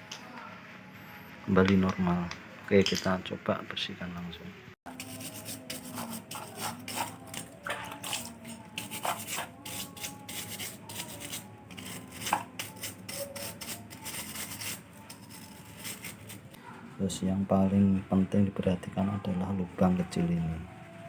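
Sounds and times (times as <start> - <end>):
scraping strokes of cleaning: 4.9 - 16.6.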